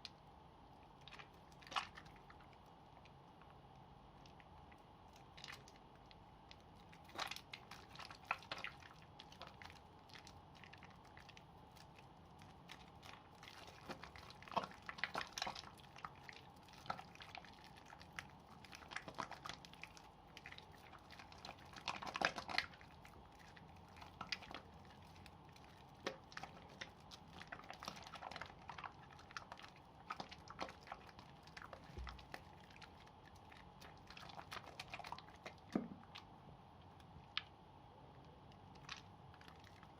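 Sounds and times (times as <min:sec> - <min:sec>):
soap lathering by hand: 0:00.9 - 0:03.6, 0:06.5 - 0:36.3.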